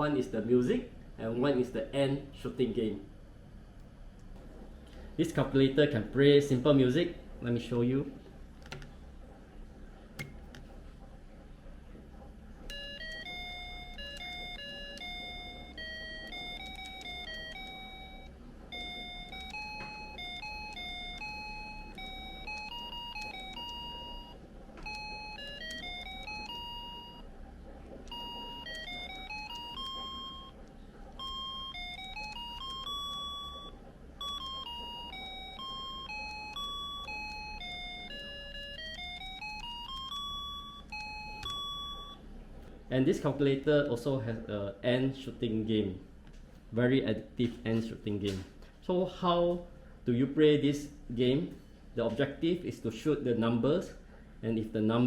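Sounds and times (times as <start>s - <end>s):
clicks: 10.1s - 10.9s, 27.8s - 42.8s
calculator beeping a melody: 12.6s - 42.6s.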